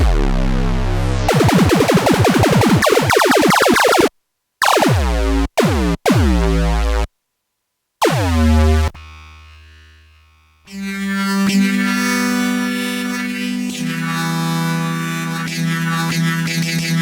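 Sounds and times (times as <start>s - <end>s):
synthesizer bass notes: 0.0s - 7.1s, 8.0s - 9.8s.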